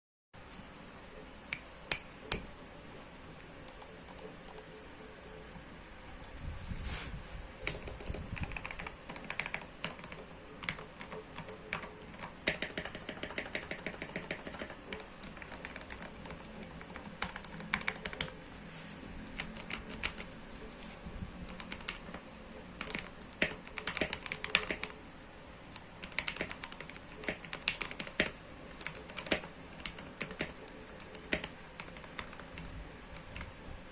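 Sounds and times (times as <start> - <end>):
typing on mechanical keyboard: 7.6 - 18.4, 19.3 - 20.4, 21.4 - 22.2, 22.8 - 25.0, 25.7 - 33.5.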